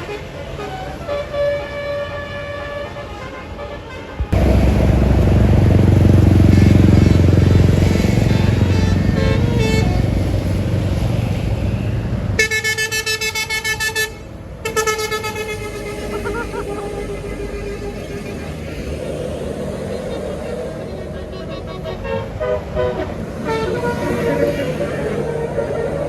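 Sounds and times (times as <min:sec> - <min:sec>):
bus horn playing warbling tune: 0:00.0 - 0:19.0, 0:21.3 - 0:26.0
diesel engine rumbling: 0:04.3 - 0:26.0.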